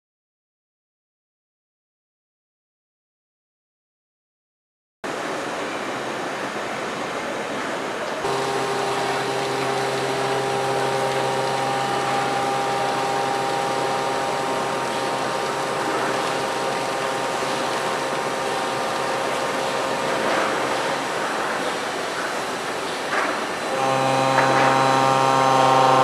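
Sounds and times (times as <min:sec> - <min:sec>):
milling machine hiss: 0:08.2 - 0:26.0
spindle whining tones: 0:08.2 - 0:26.0.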